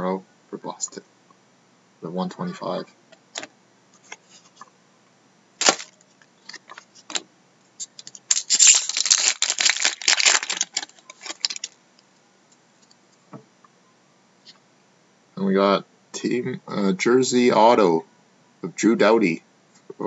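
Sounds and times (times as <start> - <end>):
packaging crinkling and rustling: 5.6 - 7.2, 8.0 - 11.8.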